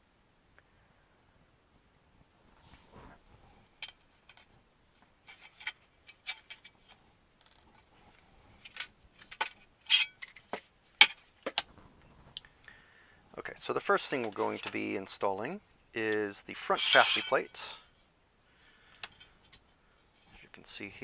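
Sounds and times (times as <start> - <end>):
small metal parts clinking: 8.6 - 11.6.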